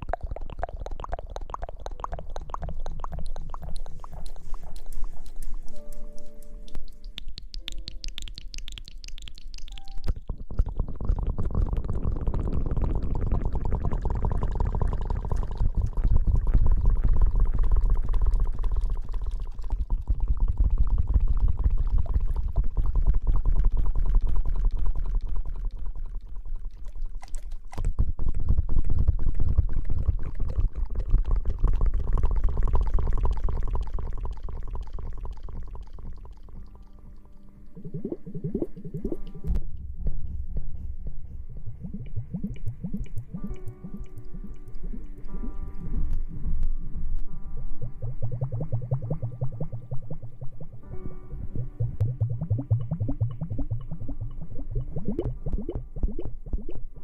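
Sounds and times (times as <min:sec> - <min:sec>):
close rubbing and rustling: 0:03.9 - 0:06.1.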